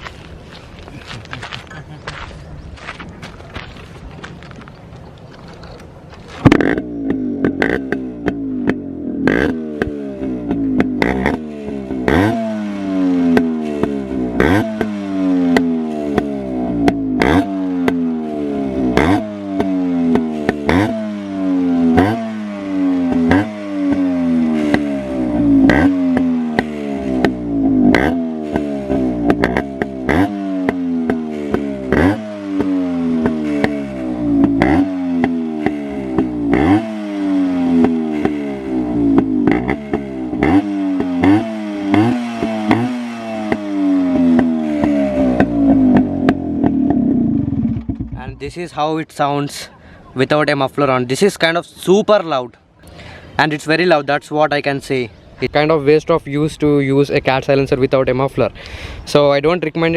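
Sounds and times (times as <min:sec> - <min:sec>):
two-stroke motorcycle engine revving: 0:06.4 - 0:49.2.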